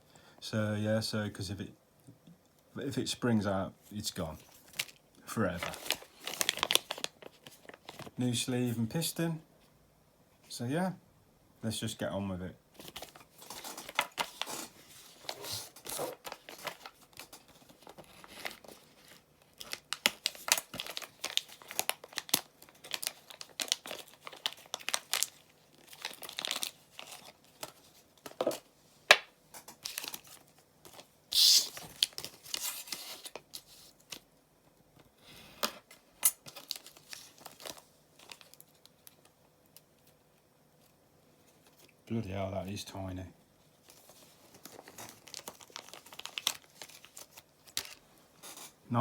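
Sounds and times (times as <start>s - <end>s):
plastic packaging crinkling: 4.4s - 8.2s, 12.8s - 34.2s, 36.3s - 39.4s, 43.8s - 48.8s.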